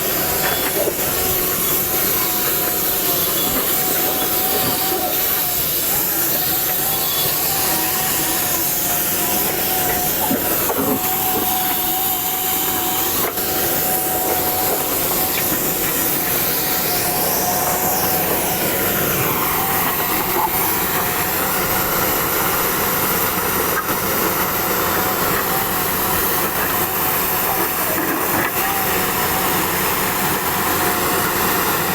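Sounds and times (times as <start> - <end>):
machine hissing and whining: 0.0 - 31.9.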